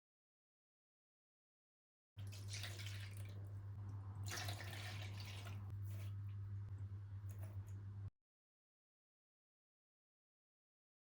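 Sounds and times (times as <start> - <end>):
tap water running and splashing: 2.2 - 3.6, 4.2 - 5.7
low hum: 2.3 - 8.1.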